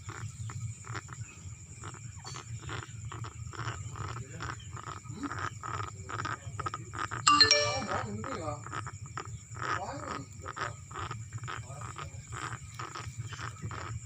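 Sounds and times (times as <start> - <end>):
chickens wet snoring rasps: 0.0 - 7.1, 9.2 - 14.0.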